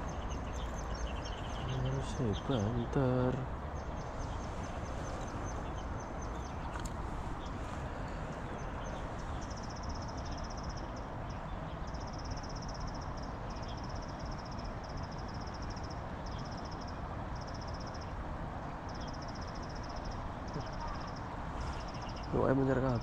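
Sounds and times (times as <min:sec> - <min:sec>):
steady rushing background noise: 0:00.0 - 0:23.0
cricket trilling: 0:11.9 - 0:18.1.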